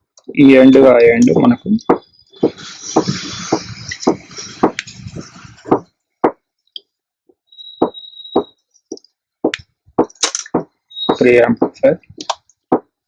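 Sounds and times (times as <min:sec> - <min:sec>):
hiss: 0:02.4 - 0:05.8
wires and parts clicking: 0:08.8 - 0:12.8
high steady tone: 0:10.0 - 0:11.9.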